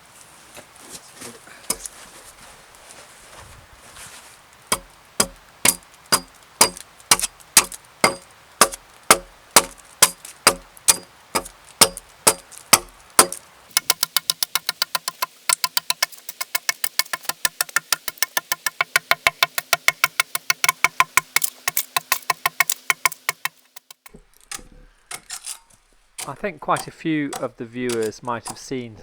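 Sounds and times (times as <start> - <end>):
axe chopping log: 4.7 - 25.3, 26.2 - 28.8.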